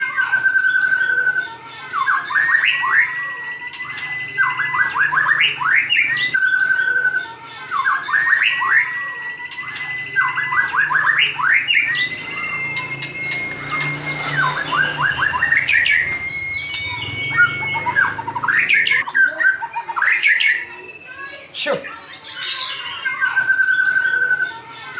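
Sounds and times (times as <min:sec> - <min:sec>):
bird singing whistled phrases: 0:00.1 - 0:24.9.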